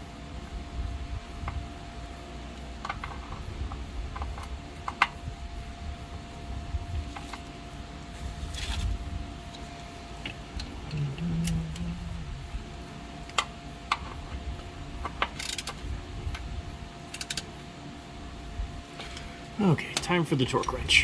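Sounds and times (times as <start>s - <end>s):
low hum: 8.2s - 15.2s
metallic clicks of hand tools: 17.1s - 17.5s.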